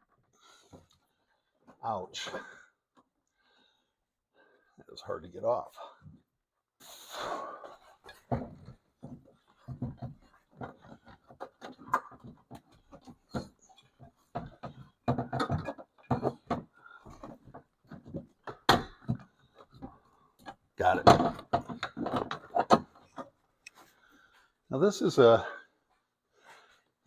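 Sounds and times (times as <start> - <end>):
plastic clicks and knocks: 8.2 - 23.4.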